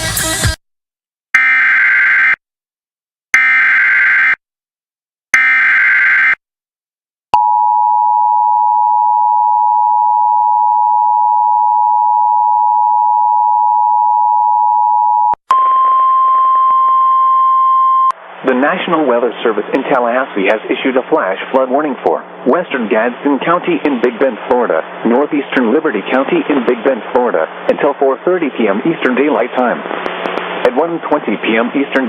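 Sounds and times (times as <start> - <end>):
single steady tone: 7.4 - 18.2.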